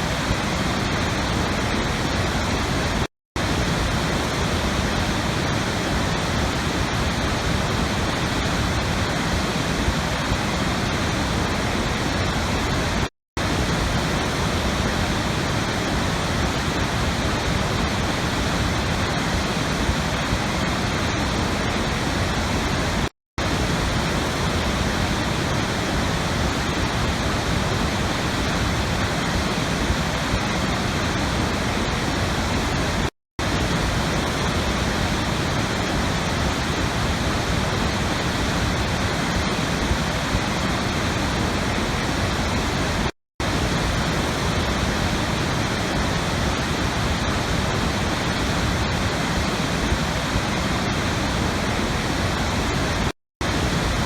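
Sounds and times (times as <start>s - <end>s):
rushing water: 0.0s - 54.0s.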